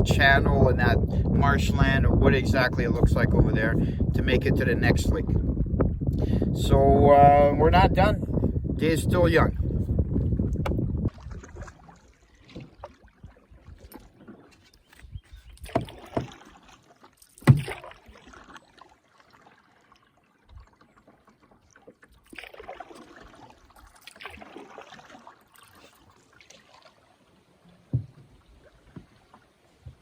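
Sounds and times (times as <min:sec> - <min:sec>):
paddle strokes swishing through water: 0:09.5 - 0:30.0
paddle knocking against canoe: 0:09.7 - 0:18.9, 0:27.8 - 0:30.0.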